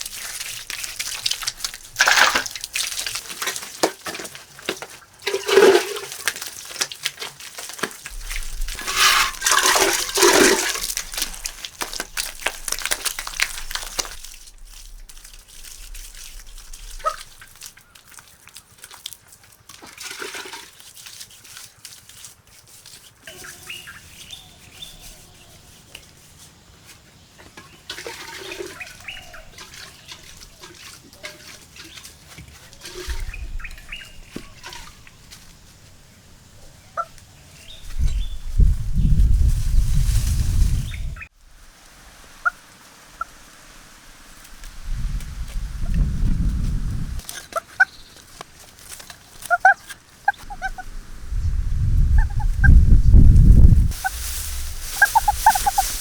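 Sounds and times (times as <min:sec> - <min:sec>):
water splashing and pouring: 0:00.0 - 0:25.8, 0:27.4 - 0:35.7, 0:37.9 - 0:47.9, 0:52.2 - 0:56.0
faint animal calls: 0:49.5 - 0:51.0.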